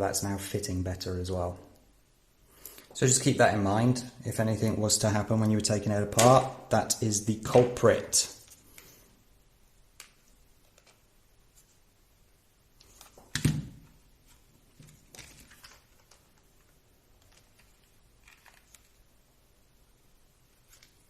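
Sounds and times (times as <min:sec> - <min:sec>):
plastic parts clicking and rattling: 0:14.8 - 0:19.0.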